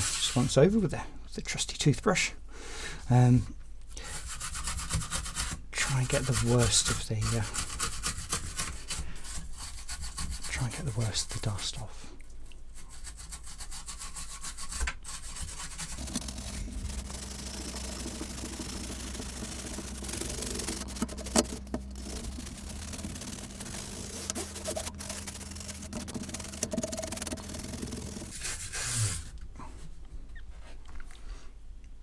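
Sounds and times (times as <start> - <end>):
toothbrush scrubbing plastic: 0.0 - 0.6, 4.0 - 12.0, 12.6 - 29.4.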